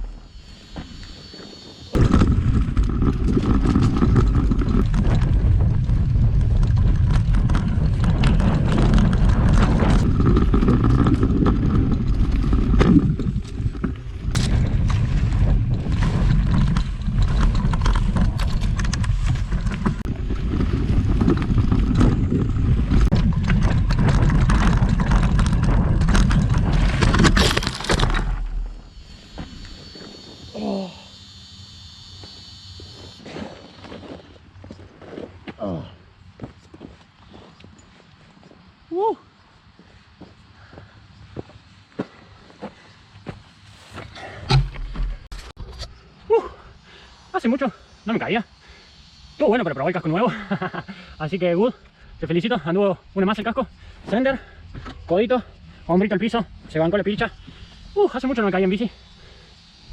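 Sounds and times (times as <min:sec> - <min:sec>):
tyres rumbling on dirt: 0:00.0 - 0:31.0, 0:49.4 - 0:59.5
wind rushing over microphone: 0:01.9 - 0:27.7
bike frame rattling: 0:02.0 - 0:28.9.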